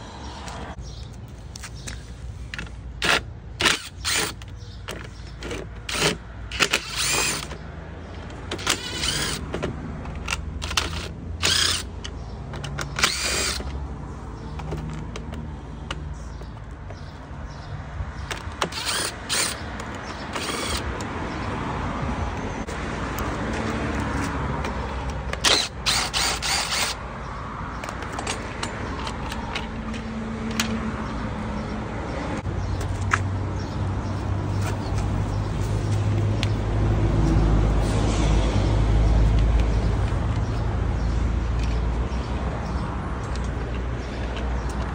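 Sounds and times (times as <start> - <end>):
short scraping and clicking: 0.4 - 13.9.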